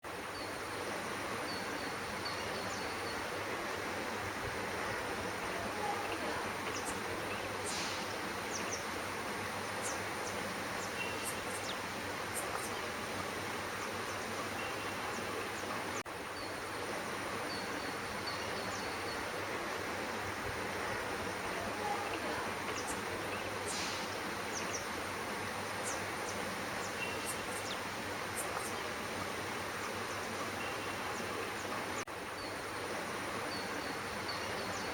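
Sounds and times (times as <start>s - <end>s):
high-pitched hiss: 6.4s - 15.4s, 22.6s - 28.9s.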